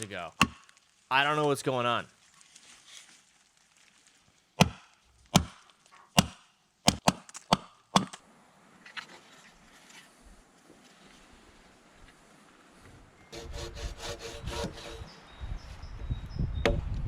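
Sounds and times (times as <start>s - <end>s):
axe chopping wood: 0.4s - 0.7s, 4.6s - 5.6s, 6.2s - 8.2s.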